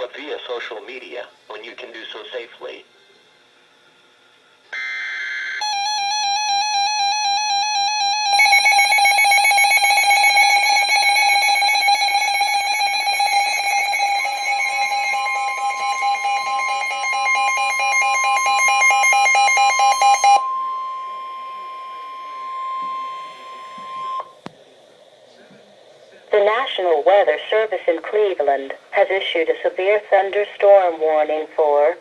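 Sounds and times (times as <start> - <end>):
data bursts: 4.8 - 24.4
single steady tone: 20.4 - 24.4.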